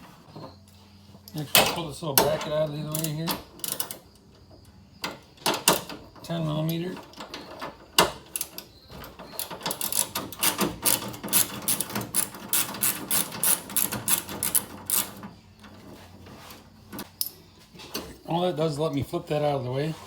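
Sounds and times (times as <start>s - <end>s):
ratchet wrench clicking: 9.4s - 15.2s.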